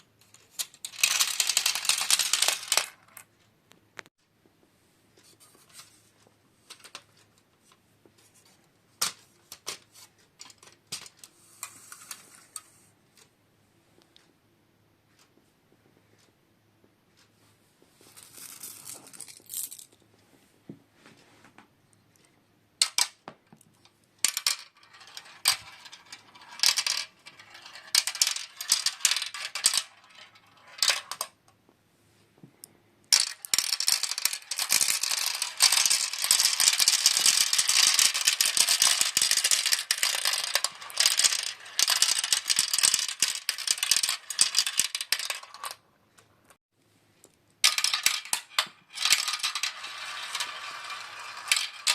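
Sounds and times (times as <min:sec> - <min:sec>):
marbles clattering down plastic track: 0:00.6 - 0:03.2, 0:24.2 - 0:31.4, 0:33.1 - 0:45.8, 0:47.6 - 0:51.9.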